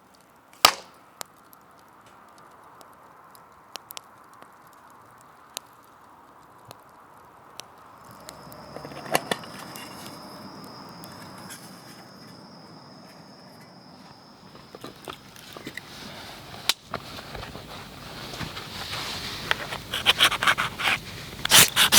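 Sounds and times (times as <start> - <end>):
steady high-pitched whine: 8.0 - 16.5
light scrapes: 11.2 - 12.4, 18.2 - 21.9
sharp clicks: 19.6 - 21.9.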